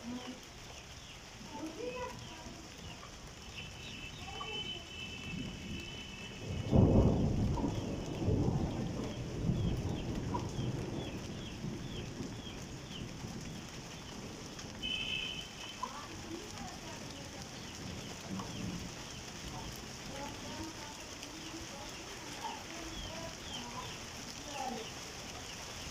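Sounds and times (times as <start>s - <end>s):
heavy rain hissing: 0.0s - 25.9s
thunder rumbling: 1.4s - 25.9s
faint chirping calls: 14.8s - 25.9s.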